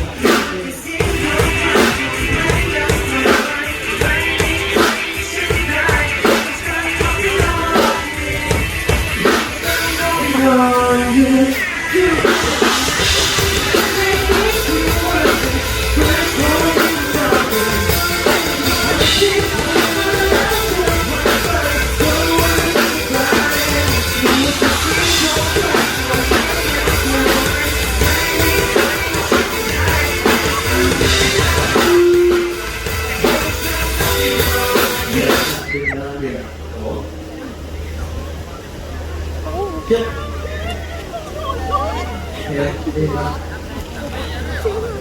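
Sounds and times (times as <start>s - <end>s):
person singing: 0.0s - 35.8s.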